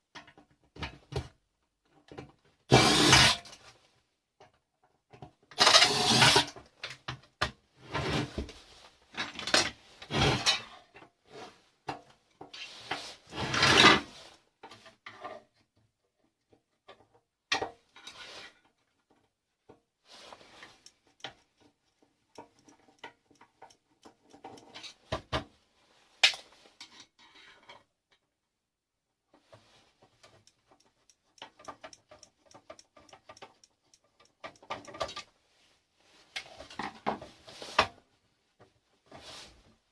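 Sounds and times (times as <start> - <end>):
small parts clicking and rattling: 20.6 - 25.0, 29.4 - 35.3.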